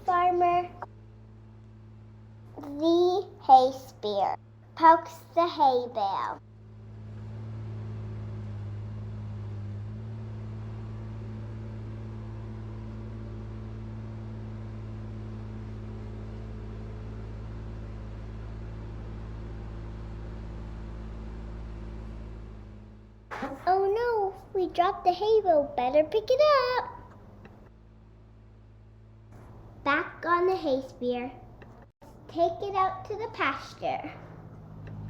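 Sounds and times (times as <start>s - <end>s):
skid steer engine running: 6.4s - 24.2s, 33.8s - 35.0s.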